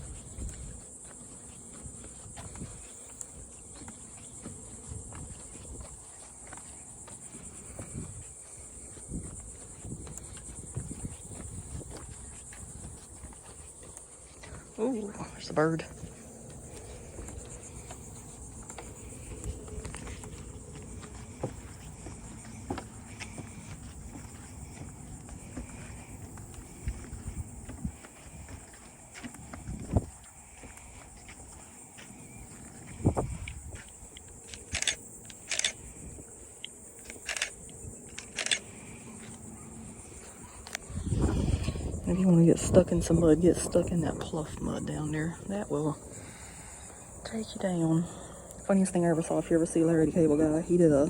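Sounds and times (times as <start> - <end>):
high-pitched insect chorus: 0.0 - 51.0
short crunching noises: 32.9 - 35.9, 36.6 - 39.4
light clicks and ticks: 33.4 - 35.8, 36.6 - 39.4.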